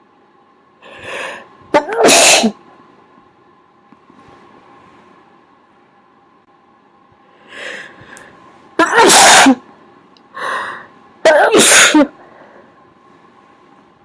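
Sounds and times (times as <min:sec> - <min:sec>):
person sneezing: 0:01.8 - 0:02.6, 0:08.8 - 0:09.6, 0:11.3 - 0:12.2.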